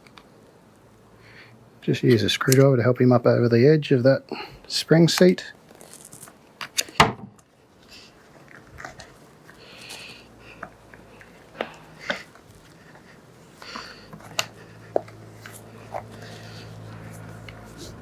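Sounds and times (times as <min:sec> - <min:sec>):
scratchy rubber rubbing: 0:12.0 - 0:18.0.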